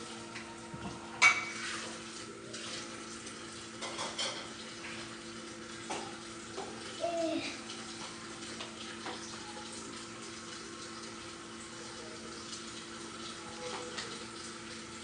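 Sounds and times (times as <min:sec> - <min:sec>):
dishes and utensils clinking: 0:00.4 - 0:02.0, 0:03.8 - 0:04.6.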